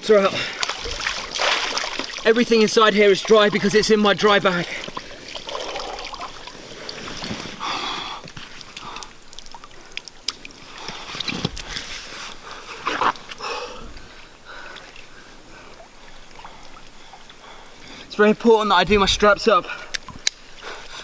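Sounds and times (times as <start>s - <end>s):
rucksack rustling: 0.1s - 9.5s.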